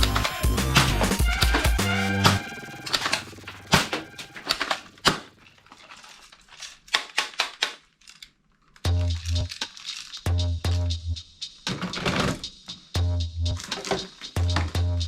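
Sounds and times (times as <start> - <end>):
plastic toy parts clicking: 3.9 - 10.3, 13.6 - 14.7.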